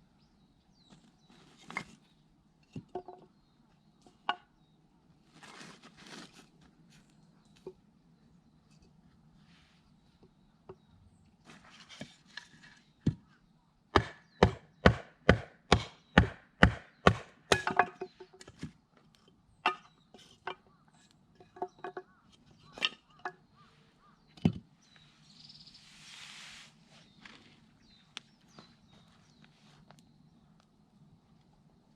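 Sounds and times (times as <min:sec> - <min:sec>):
axe chopping firewood: 0:14.0 - 0:18.6.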